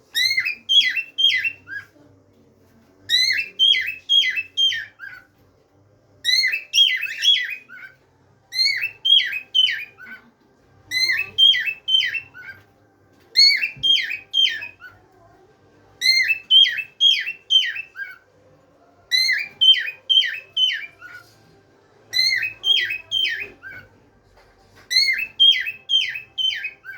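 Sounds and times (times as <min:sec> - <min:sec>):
cockatiel whistling: 0:00.1 - 0:01.9, 0:03.1 - 0:05.2, 0:06.2 - 0:10.2, 0:10.9 - 0:12.6, 0:13.4 - 0:14.9, 0:16.0 - 0:18.2, 0:19.1 - 0:21.2, 0:22.1 - 0:23.9, 0:24.9 - 0:26.9.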